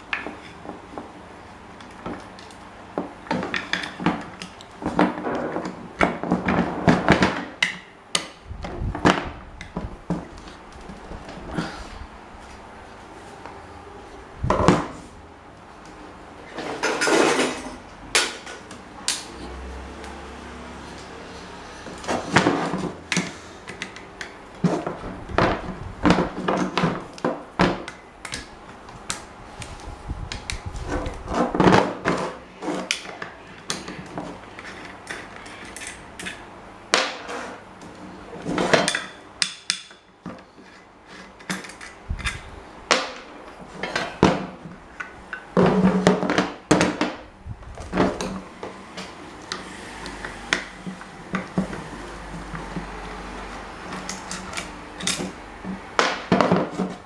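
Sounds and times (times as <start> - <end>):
metal parts and tools clanking: 16.5 - 19.3.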